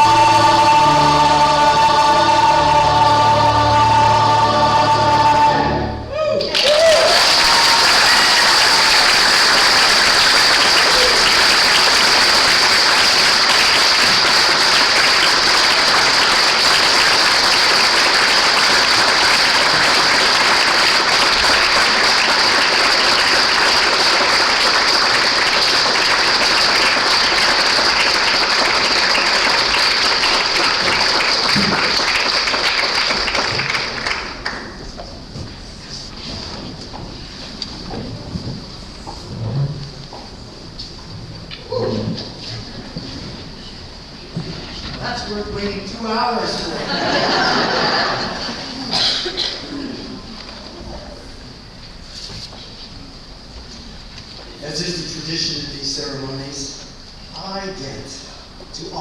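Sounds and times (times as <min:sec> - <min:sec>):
congregation applauding: 0:06.3 - 0:35.0.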